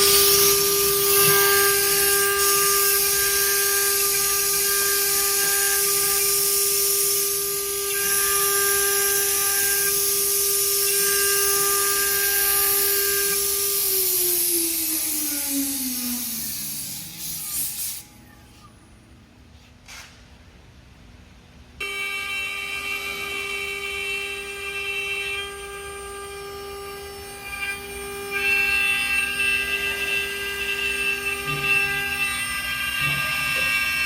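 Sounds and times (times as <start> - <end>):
router spindle whining: 0.0 - 18.7, 22.0 - 34.0
loud hiss: 9.6 - 18.4.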